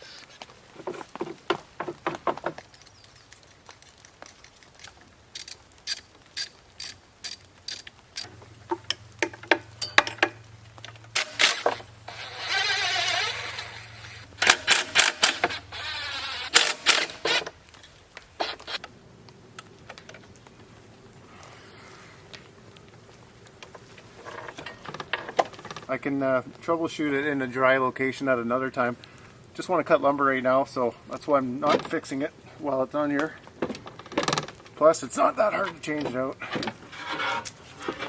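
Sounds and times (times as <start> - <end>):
ratcheting: 4.4 - 17.5
sharp mechanical clicks and knocks: 7.3 - 13.7, 14.4 - 15.6, 16.5 - 17.5
low steady hum: 8.3 - 33.9.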